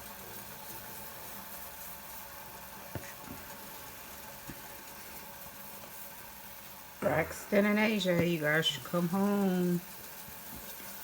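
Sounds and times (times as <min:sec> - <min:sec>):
steady hum: 0:06.9 - 0:09.8.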